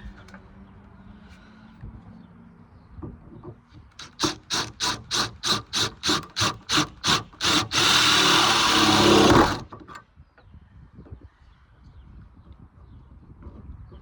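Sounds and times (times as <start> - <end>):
loud grinding: 4.0 - 10.0
saw rasping through sheet metal: 4.0 - 10.0.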